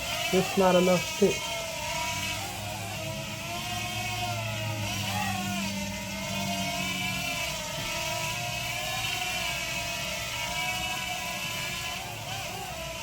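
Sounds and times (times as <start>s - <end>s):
drone motors whining: 0.0s - 13.0s.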